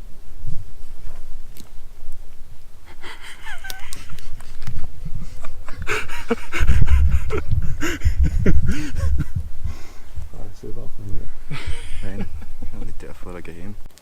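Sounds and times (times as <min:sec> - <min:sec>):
microphone handling rumble: 0:00.0 - 0:13.9
person panting and gasping: 0:02.8 - 0:10.2
scattered clicks: 0:03.5 - 0:05.6.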